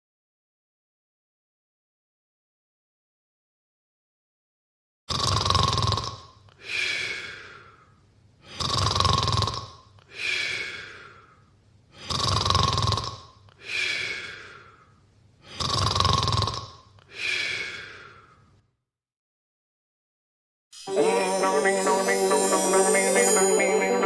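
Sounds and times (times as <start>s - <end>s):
person snoring: 5.1s - 7.7s, 8.5s - 11.0s, 12.0s - 14.8s, 15.5s - 18.4s.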